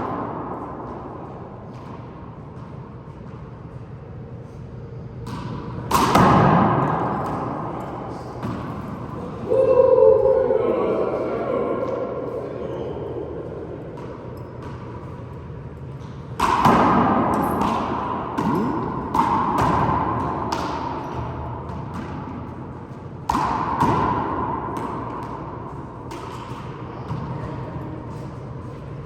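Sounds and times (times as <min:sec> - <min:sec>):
ball smacks with echoing ring: 0:05.2 - 0:09.4, 0:13.8 - 0:15.3, 0:16.0 - 0:27.6.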